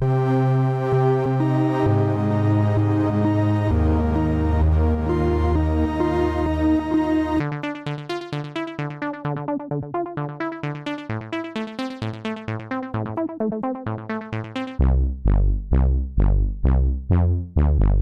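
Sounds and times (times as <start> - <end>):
deep bass: 0.0 - 7.6, 12.9 - 18.0
synthesizer phone ringtone: 1.1 - 14.8.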